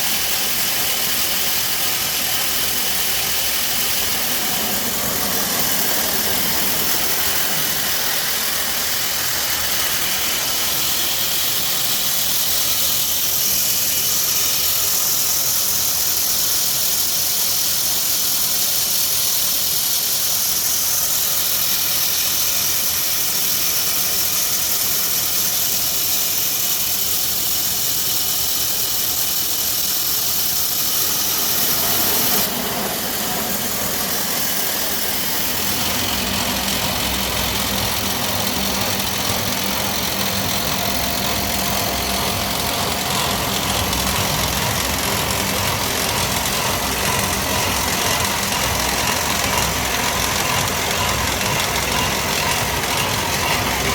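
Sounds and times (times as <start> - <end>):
high hiss: 0.0 - 53.9
pellet mill machine hum: 0.0 - 53.9
deep motor hum: 31.3 - 53.9.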